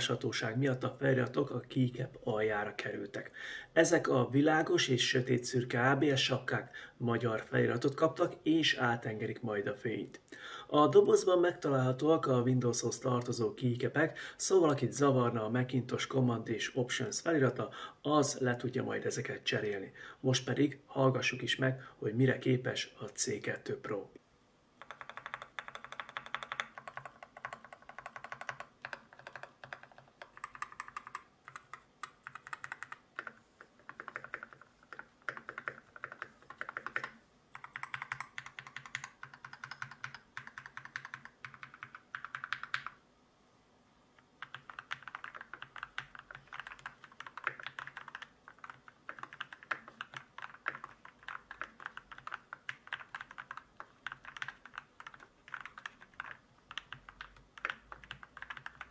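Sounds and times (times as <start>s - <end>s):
mechanical keyboard typing: 24.8s - 43.0s, 44.4s - 58.9s.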